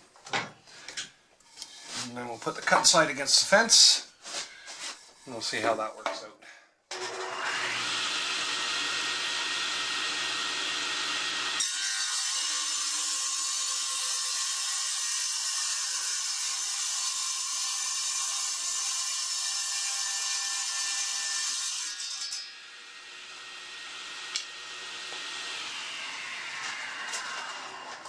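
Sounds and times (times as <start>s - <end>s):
saw cutting wood: 6.9s - 28.0s
table saw whining: 6.9s - 28.0s.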